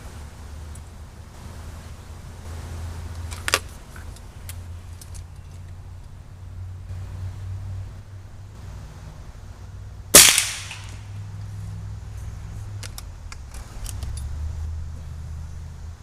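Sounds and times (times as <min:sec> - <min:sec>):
air rifle shot: 0:10.2 - 0:11.1.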